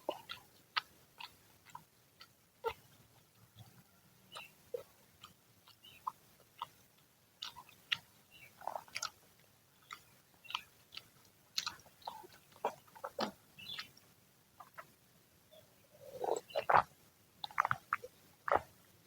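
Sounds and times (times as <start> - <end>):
crisp chewing crunches: 0.0 - 6.8, 7.4 - 14.9, 16.1 - 18.8
wet mouth sounds: 9.8 - 14.0, 16.0 - 18.8.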